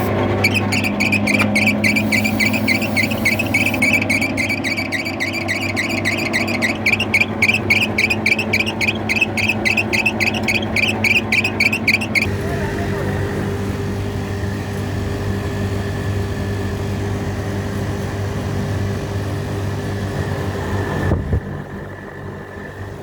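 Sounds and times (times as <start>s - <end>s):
high chirping tick: 0.0s - 12.3s
fan running with low hum: 0.0s - 23.0s.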